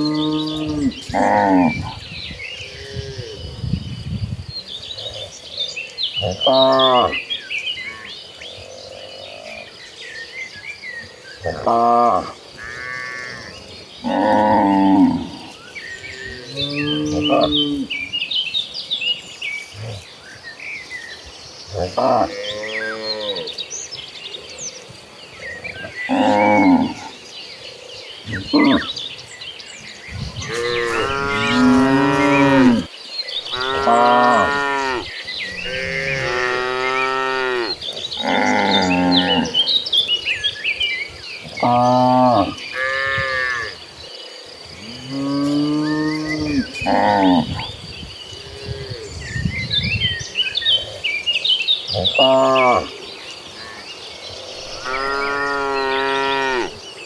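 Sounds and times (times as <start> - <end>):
cattle mooing: 30.4 - 32.9, 33.5 - 39.6, 54.6 - 56.8.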